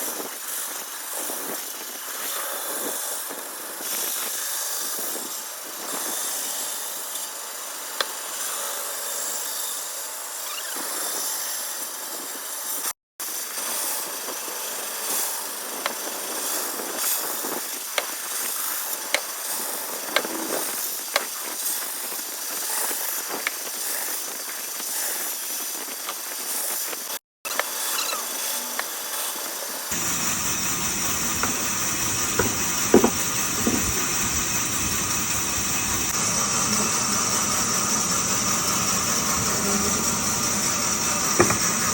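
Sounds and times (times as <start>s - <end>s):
power saw cutting wood: 27.5s - 41.9s.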